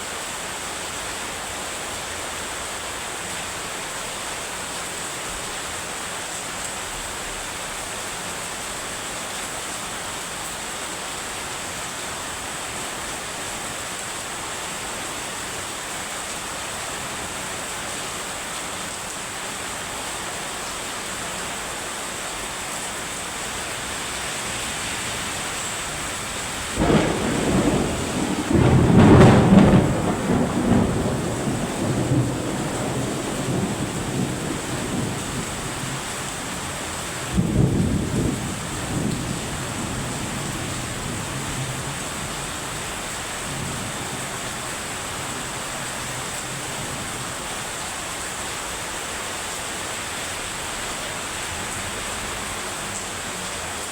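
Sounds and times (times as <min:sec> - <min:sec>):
heavy rain: 0:00.0 - 0:53.9
thunder rumbling: 0:23.5 - 0:47.5.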